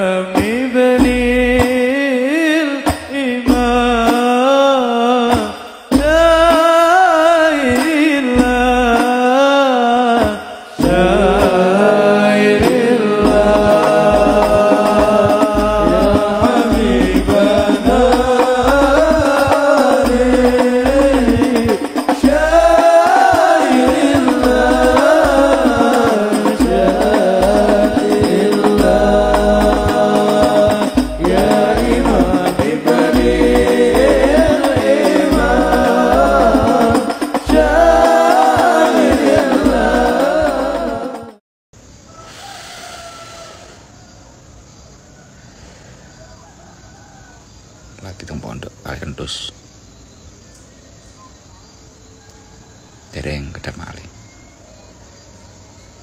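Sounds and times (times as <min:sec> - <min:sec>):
person singing devotional chant: 0:00.0 - 0:41.4.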